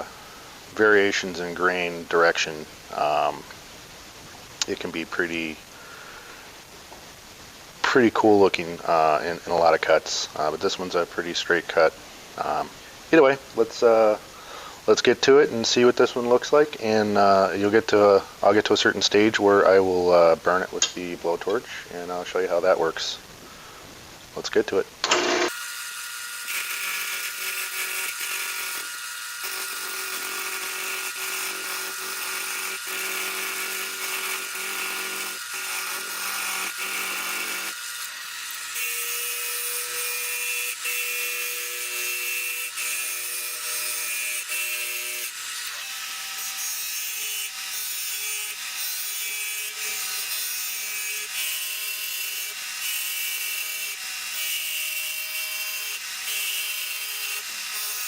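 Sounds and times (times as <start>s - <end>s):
lathe tool shaving wood: 25.1s - 58.0s.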